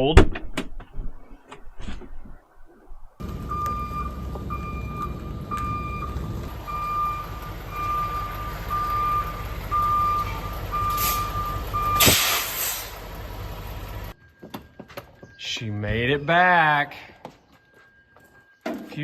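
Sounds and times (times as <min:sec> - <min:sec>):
diesel engine running: 0:03.2 - 0:14.2
truck backup alarm beeping: 0:03.2 - 0:15.5
loud hiss of air: 0:12.0 - 0:13.0.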